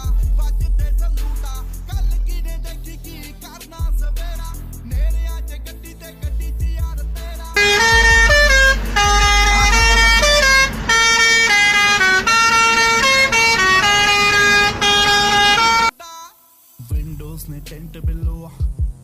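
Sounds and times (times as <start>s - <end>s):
low road and engine rumble: 4.9s - 15.9s
truck musical horn tune: 7.6s - 16.0s.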